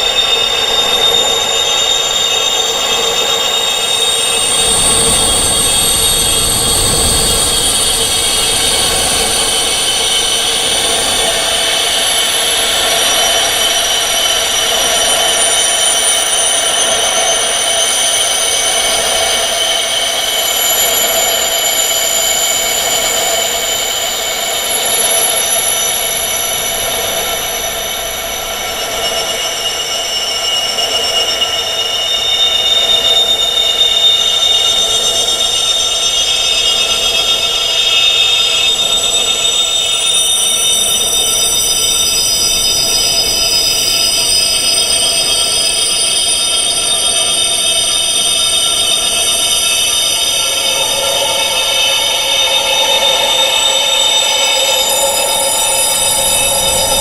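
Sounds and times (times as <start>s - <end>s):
metal wind chimes ringing: 40.0s - 57.0s.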